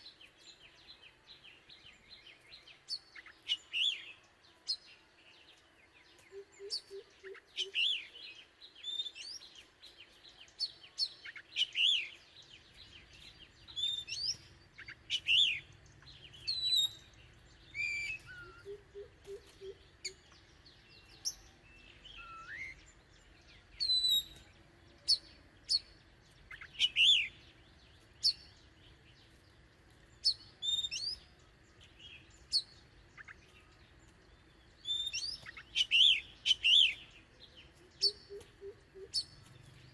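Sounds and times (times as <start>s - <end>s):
bird singing whistled notes: 0.0s - 29.4s, 30.1s - 39.9s.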